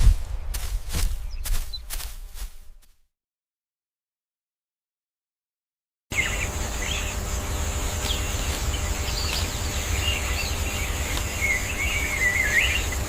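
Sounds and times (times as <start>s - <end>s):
birds chirping and whistling: 0.4s - 2.0s, 6.1s - 13.0s
steady high-pitched buzz: 6.1s - 13.0s.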